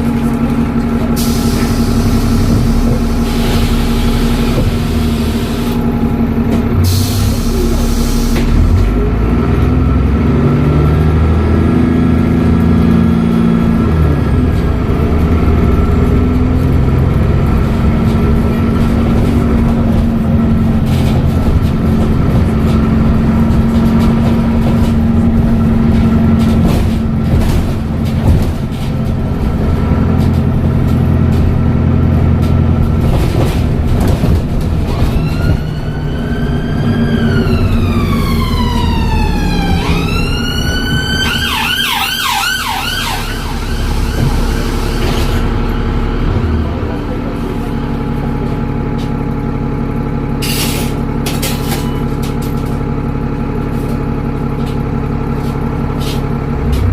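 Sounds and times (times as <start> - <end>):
bus diesel engine: 0.0 - 56.9
high whistling tone rising: 35.2 - 46.2.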